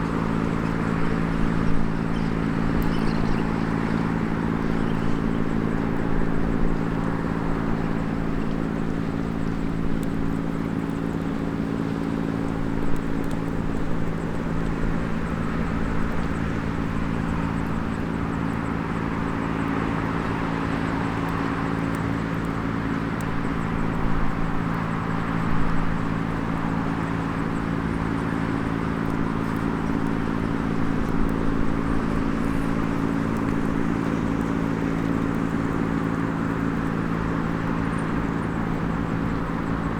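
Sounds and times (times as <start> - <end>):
campfire crackling: 0.0 - 39.9
low engine-like hum: 0.0 - 39.9.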